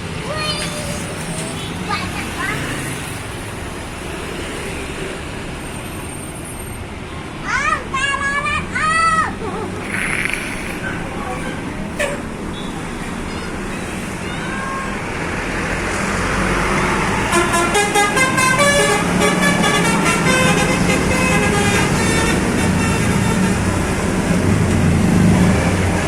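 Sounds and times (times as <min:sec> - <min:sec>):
bus engine rumble: 0:00.0 - 0:04.2, 0:05.1 - 0:26.0
bus musical horn melody: 0:17.2 - 0:24.2.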